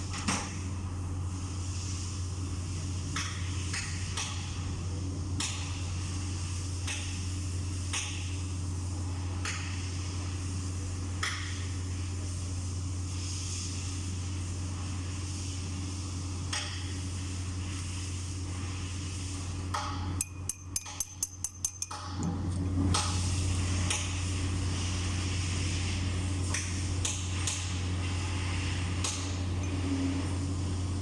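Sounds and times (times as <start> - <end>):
steady low hum: 0.0 - 31.0
tools tapping on metal: 20.2 - 22.5, 29.6 - 30.0.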